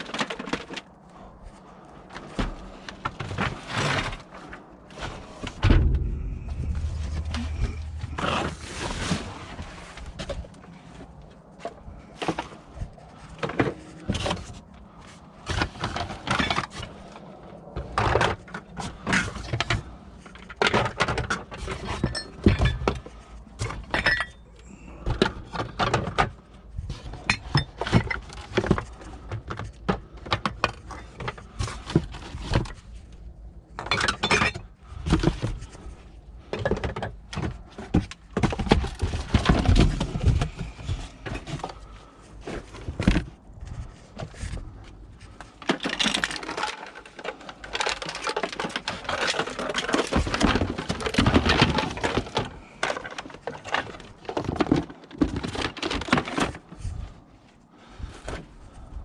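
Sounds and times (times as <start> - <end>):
rustling and scraping: 0.0 - 59.0
hard objects clinking and clattering: 5.7 - 10.5, 17.8 - 32.8, 44.6 - 56.6.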